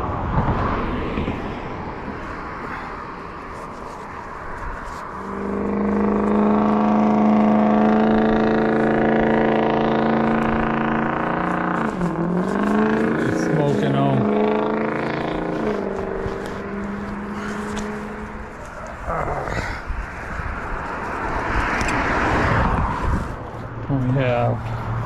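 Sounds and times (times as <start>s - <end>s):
motor engine running: 5.2s - 19.8s.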